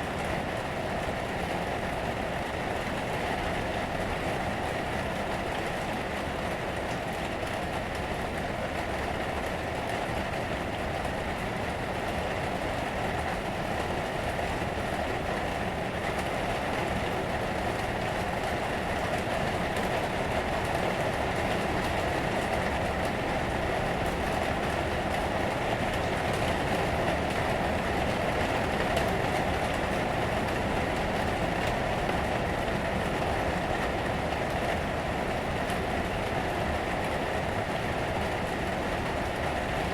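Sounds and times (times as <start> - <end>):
rain on a roof: 0.0 - 39.9.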